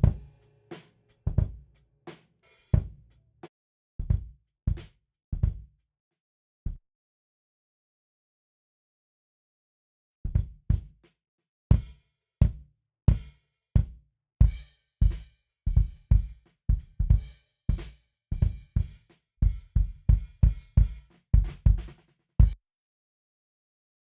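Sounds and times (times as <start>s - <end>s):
drum kit groove: 0.0s - 3.2s, 11.7s - 22.6s.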